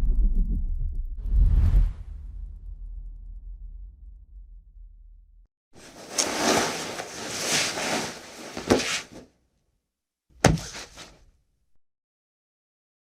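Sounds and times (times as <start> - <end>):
body dropping heavy thud: 5.8 - 9.2, 10.4 - 11.2
body dragged across cement floor: 5.8 - 9.3, 10.5 - 11.2
knocks: 10.4 - 11.1.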